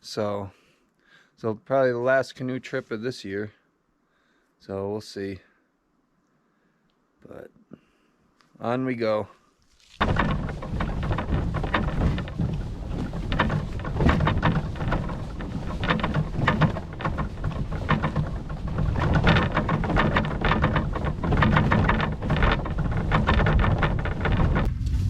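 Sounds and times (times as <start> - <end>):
wind rumbling on microphone: 10.0 - 25.0.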